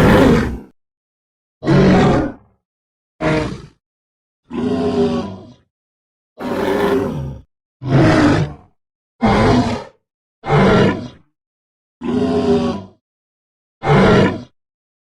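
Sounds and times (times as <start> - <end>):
dinosaur calls: 0.0 - 0.7.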